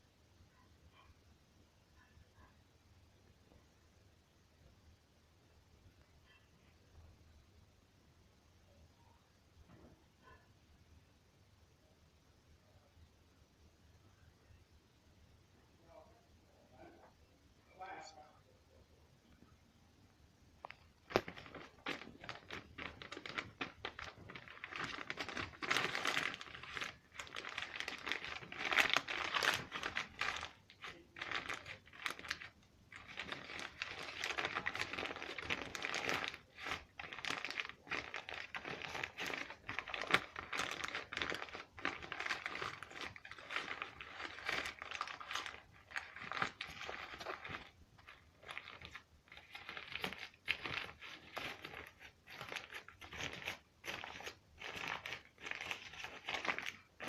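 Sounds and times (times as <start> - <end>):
fingers squeezing crinkly object: 20.6 - 57.0.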